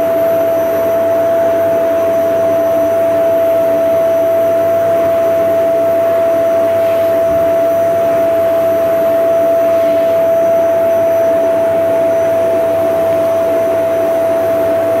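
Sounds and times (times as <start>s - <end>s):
vacuum cleaner motor whining: 0.0s - 15.0s.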